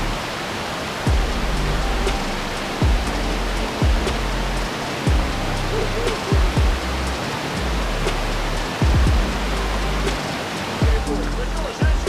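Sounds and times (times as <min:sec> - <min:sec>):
low bass line: 0:00.0 - 0:00.2, 0:01.1 - 0:12.0
steady rushing hiss: 0:00.0 - 0:12.0
deep bass drum hits: 0:01.1 - 0:02.2, 0:02.8 - 0:04.4, 0:05.1 - 0:07.0, 0:07.7 - 0:10.2, 0:10.8 - 0:11.2.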